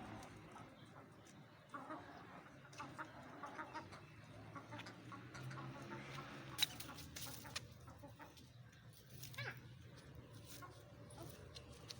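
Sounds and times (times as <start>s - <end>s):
chickens clucking: 0.0s - 8.7s.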